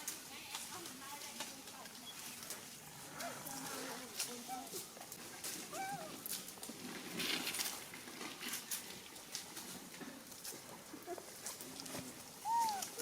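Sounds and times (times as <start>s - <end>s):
rustling: 0.0s - 13.0s
monkey squeak: 12.4s - 13.0s.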